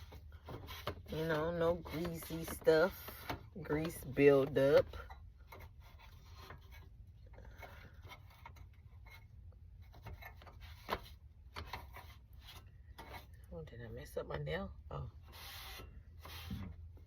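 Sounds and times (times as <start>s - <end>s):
wipe scraping a stove surface: 15.2s - 17.0s.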